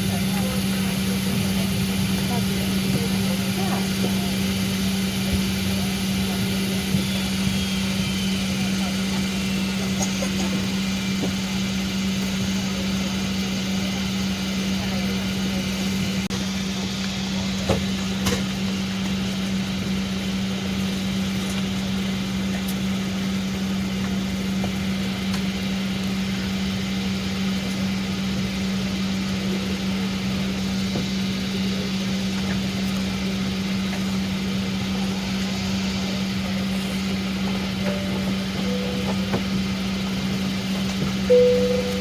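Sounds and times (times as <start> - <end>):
air-conditioning airflow: 30.5 - 42.0
low drone: 41.3 - 42.0.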